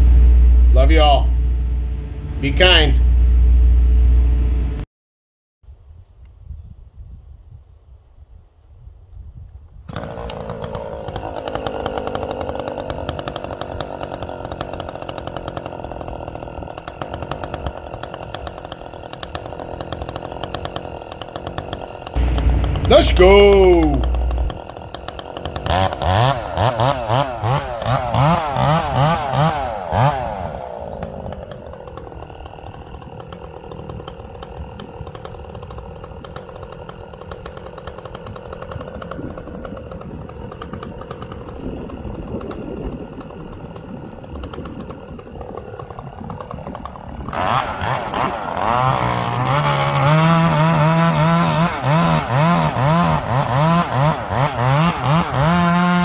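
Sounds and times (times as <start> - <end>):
chainsaw running: 0.0 - 4.8, 9.9 - 56.0.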